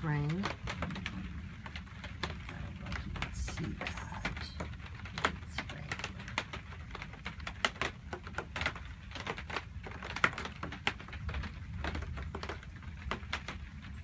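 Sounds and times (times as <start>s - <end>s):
low steady hum: 0.0s - 10.2s
raindrops tapping: 0.0s - 14.0s.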